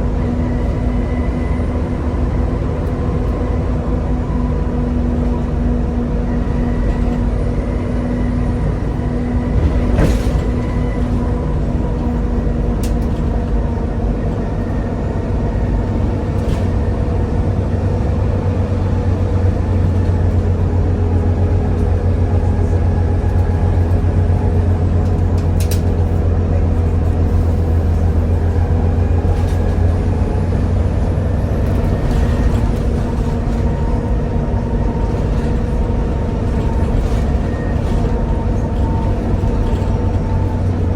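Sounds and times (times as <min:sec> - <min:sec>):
bus diesel engine droning: 0:00.0 - 0:40.9.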